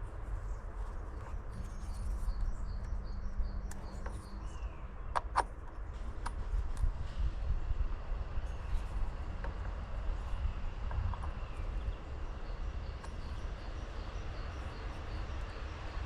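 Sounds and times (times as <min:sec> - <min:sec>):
bird chirping: 0:01.6 - 0:05.1, 0:11.1 - 0:16.0.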